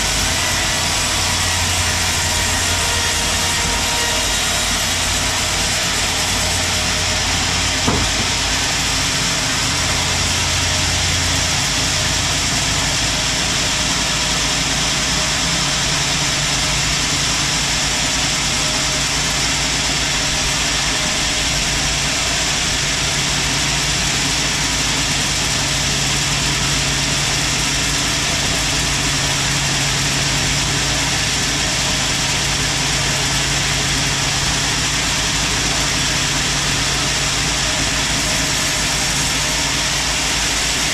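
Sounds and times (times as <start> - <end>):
motor hum: 0.0 - 12.4
sharp knock: 7.8 - 8.5.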